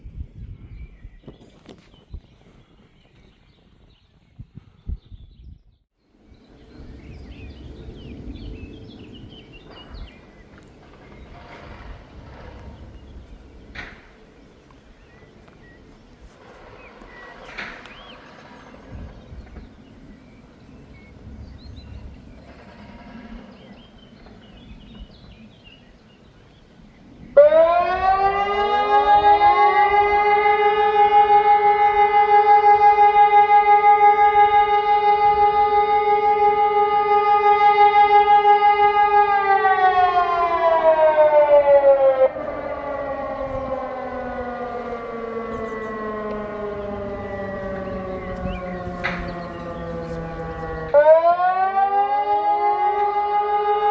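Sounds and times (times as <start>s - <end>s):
small birds chirping: 0.7s - 27.4s, 42.3s - 51.0s
low rumble: 6.3s - 25.3s, 42.3s - 51.2s
electronic siren steady tone: 6.6s - 25.5s, 27.2s - 53.9s
electromechanical siren winding down: 27.3s - 53.9s.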